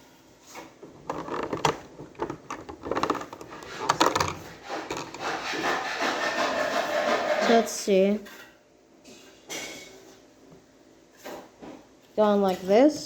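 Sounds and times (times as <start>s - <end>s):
rustling: 0.5s - 5.9s
plastic parts clicking and clattering: 0.8s - 5.8s.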